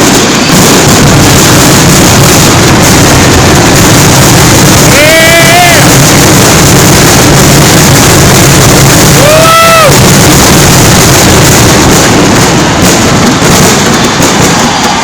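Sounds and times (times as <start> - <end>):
street noise rumble: 0.0 - 15.0
high-pitched whoops: 4.8 - 6.1, 9.0 - 10.4, 13.9 - 15.0.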